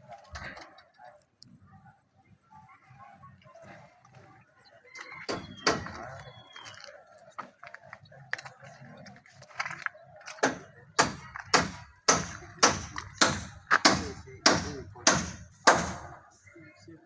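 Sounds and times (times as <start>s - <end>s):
sharp ringing knocks: 10.4s - 16.2s.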